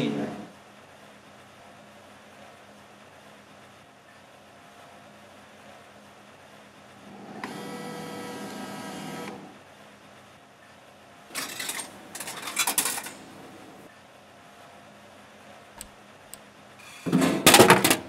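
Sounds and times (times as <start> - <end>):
vending machine motor whirring: 7.0 - 9.6, 11.3 - 13.9.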